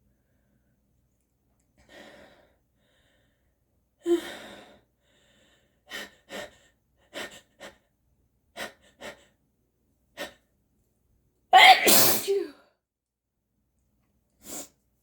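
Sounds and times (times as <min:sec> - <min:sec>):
person gasping: 0:11.6 - 0:12.5
sneeze: 0:11.6 - 0:12.6.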